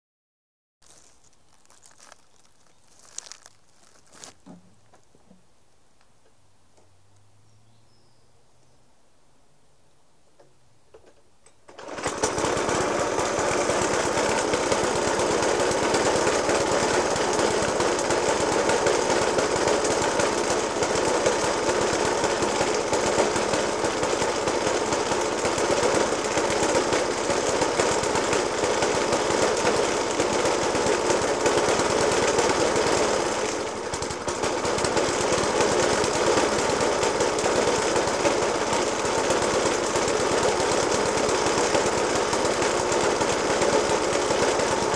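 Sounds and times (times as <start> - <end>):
lawnmower engine rough idle: 10.9 - 44.9.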